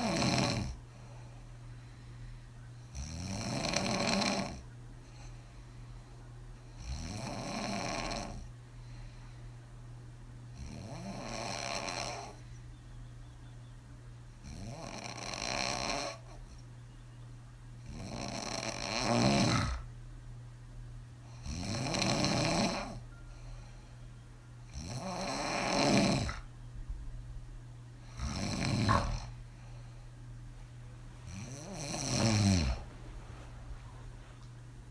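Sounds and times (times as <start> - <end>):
woman snoring: 0.0 - 0.8, 2.9 - 4.6, 6.7 - 8.5, 10.6 - 12.4, 14.4 - 16.3, 17.8 - 19.8, 21.4 - 23.0, 24.7 - 26.4, 28.0 - 29.4, 31.3 - 32.9
low hum: 26.4 - 31.4, 32.1 - 34.9.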